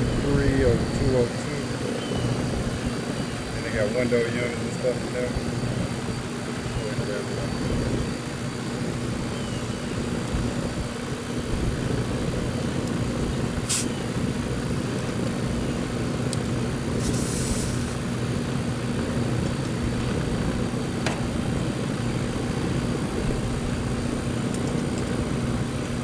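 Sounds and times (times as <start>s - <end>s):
compressor hum: 0.0s - 26.0s
condenser fan whoosh: 0.0s - 26.0s
brief hiss: 13.7s - 14.0s, 17.0s - 18.0s.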